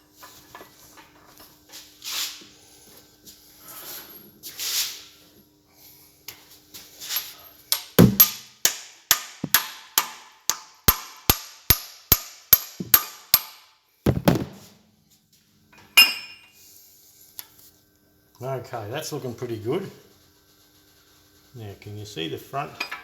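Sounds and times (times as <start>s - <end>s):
metallic clink: 7.7s - 8.5s
hammer striking steel punch: 7.7s - 14.7s
dull thud: 8.0s - 8.3s, 14.1s - 14.7s.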